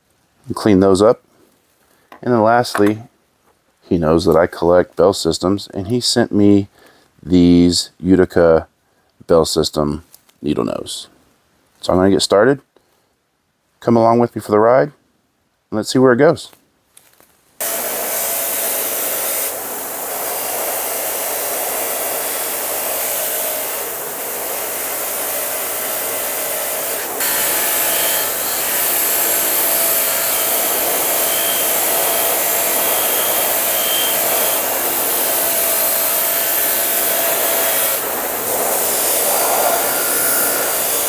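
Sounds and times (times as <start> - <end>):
power tool rushing hiss: 17.6 - 41.0.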